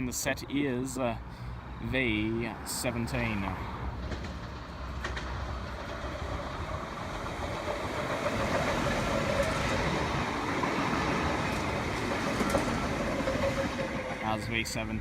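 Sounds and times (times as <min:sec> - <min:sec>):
electric train passing: 0:03.3 - 0:15.0.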